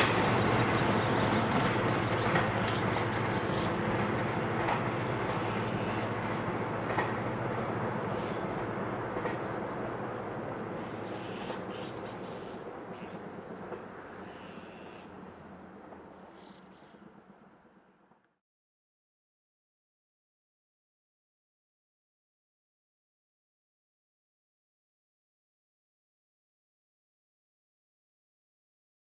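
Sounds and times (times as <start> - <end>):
birds chirping: 0.0 - 7.0, 8.0 - 18.0
train rumbling on track: 0.0 - 18.2.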